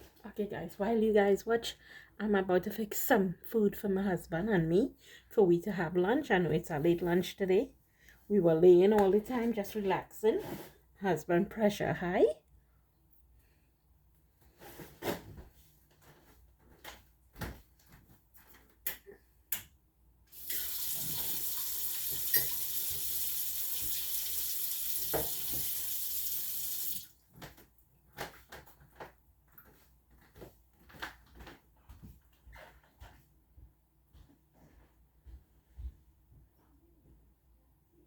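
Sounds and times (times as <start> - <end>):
tap running into a sink: 20.4 - 27.1.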